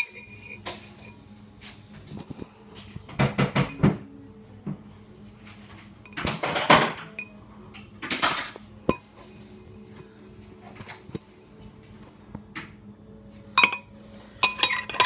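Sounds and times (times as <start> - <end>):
kitchen utensils rattling: 0.0 - 1.2, 6.0 - 7.3, 8.0 - 9.3, 13.6 - 15.0.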